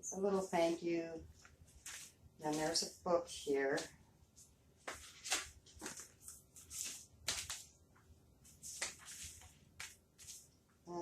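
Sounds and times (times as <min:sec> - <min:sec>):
paper and packaging rustling: 0:04.8 - 0:07.7.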